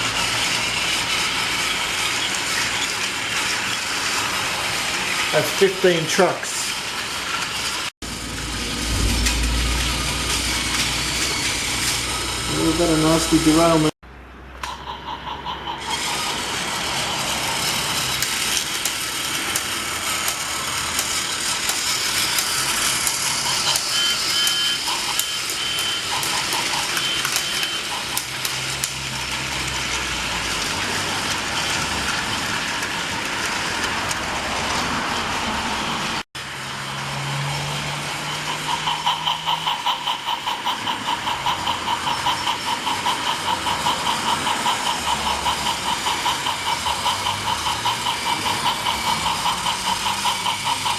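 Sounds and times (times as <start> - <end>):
toy train motor whirring: 0.0 - 8.4, 10.2 - 13.9, 14.6 - 50.9
plastic trucks rattling on track: 15.8 - 34.9, 38.4 - 50.9.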